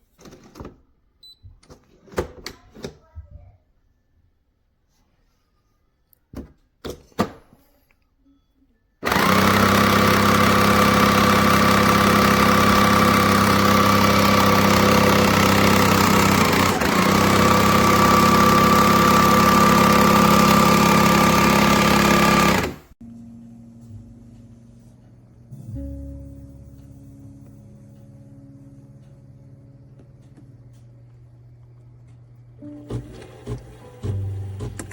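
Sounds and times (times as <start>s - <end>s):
espresso machine buzzing: 9.0s - 22.9s.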